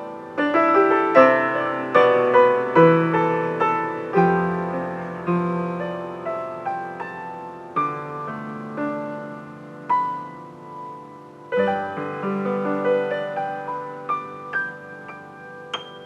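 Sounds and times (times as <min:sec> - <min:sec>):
slow gentle solo piano: 0:00.0 - 0:16.0.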